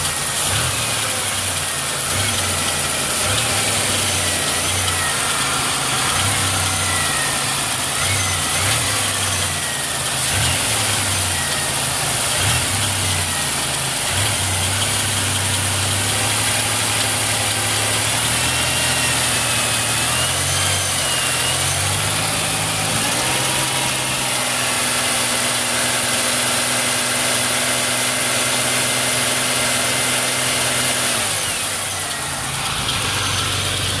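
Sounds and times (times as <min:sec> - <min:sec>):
car engine running: 0:00.0 - 0:34.0
faint high-pitched squeal: 0:02.3 - 0:13.8.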